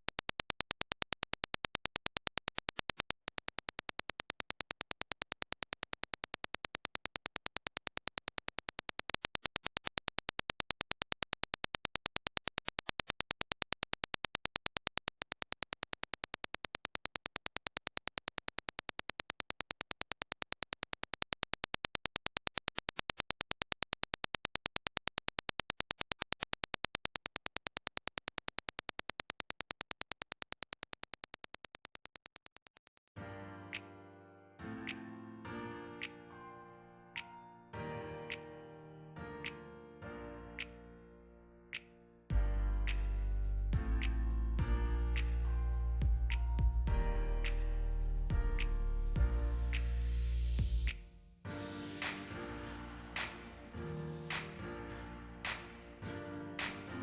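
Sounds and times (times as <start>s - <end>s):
rapid train of sharp clicks: 0.0s - 33.1s, 53.2s - 53.7s, 54.3s - 54.6s, 55.5s - 55.9s, 56.6s - 57.0s.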